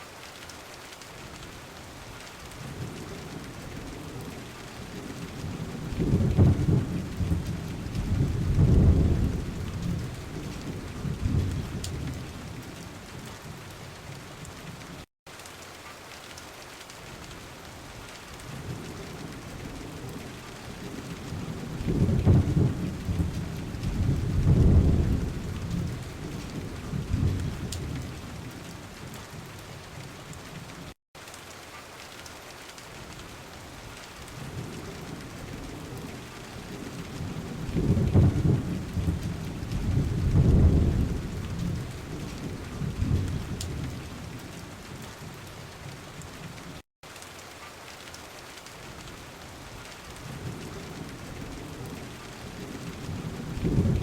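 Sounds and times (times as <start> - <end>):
steady rain: 0.0 - 54.0
low thunder rolling: 4.9 - 12.6, 18.6 - 28.4, 34.4 - 44.4, 50.3 - 54.0.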